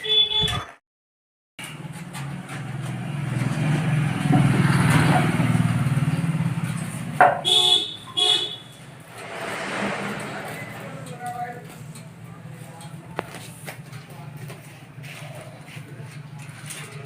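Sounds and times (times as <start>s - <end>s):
car horn honks: 0.0s - 0.7s, 7.4s - 8.9s
vehicle engine passing: 2.2s - 7.2s, 8.6s - 13.7s.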